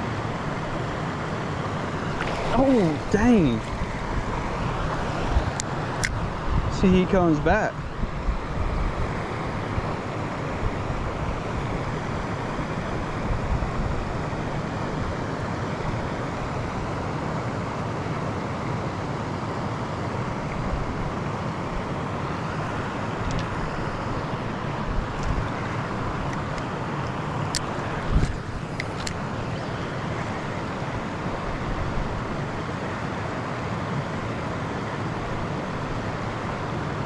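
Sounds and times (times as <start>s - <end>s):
creek water rushing: 0.0s - 7.3s, 25.4s - 37.0s.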